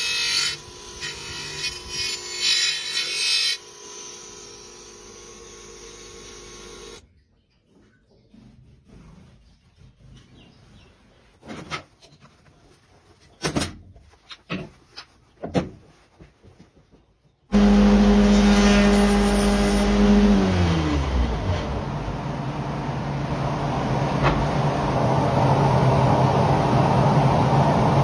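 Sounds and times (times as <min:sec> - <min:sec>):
electric grinder humming: 0:00.0 - 0:07.0, 0:17.5 - 0:23.6.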